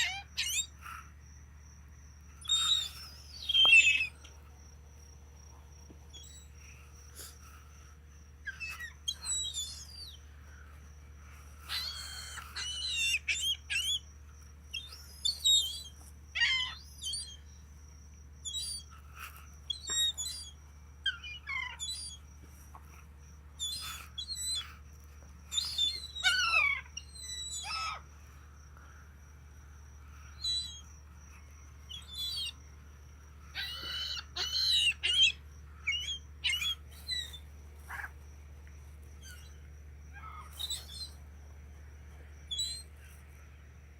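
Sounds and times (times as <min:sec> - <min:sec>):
steady low hum: 0:00.0 - 0:43.9
gulls calling: 0:02.4 - 0:04.4, 0:11.5 - 0:14.1, 0:25.5 - 0:28.1, 0:33.4 - 0:38.2.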